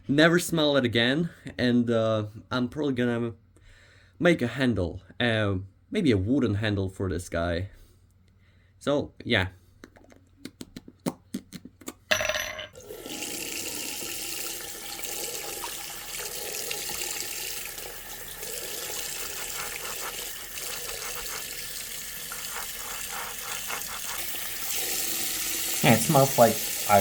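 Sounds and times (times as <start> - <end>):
water running into sink: 12.8 - 27.0.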